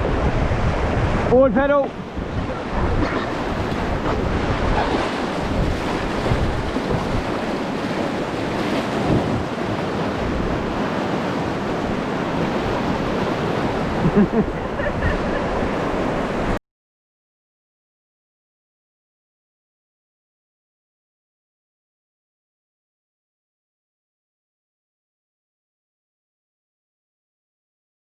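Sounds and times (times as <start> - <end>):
wind noise on microphone: 0.0 - 16.6.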